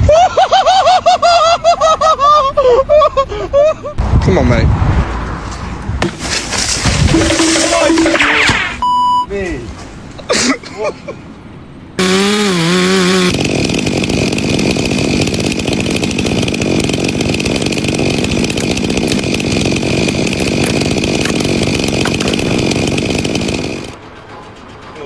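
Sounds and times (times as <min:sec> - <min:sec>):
power saw running: 0:12.0 - 0:24.0.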